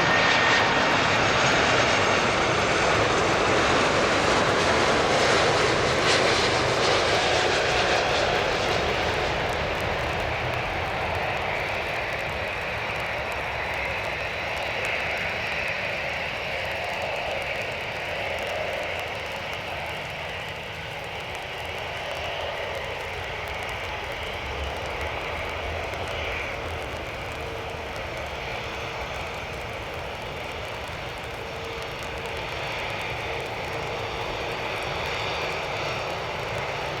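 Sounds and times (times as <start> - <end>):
jet airliner engine rush: 0.0 - 37.0.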